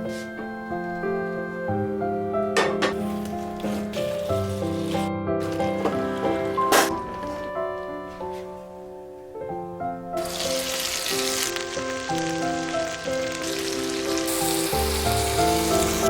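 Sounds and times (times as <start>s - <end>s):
background piano music: 0.0s - 16.0s
food sizzling in a frying pan: 10.2s - 16.0s.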